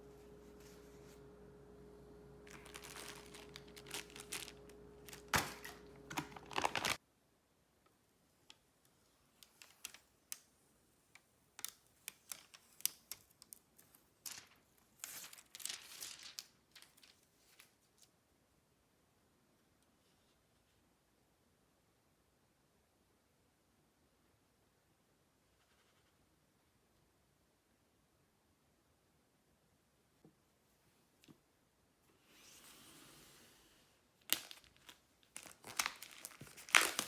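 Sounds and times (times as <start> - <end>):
low hum with faint tone: 0.0 - 9.1.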